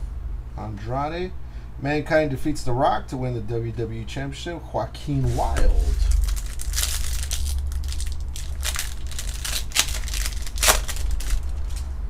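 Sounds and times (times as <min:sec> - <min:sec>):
foil wrapper crinkling: 0:05.5 - 0:11.9.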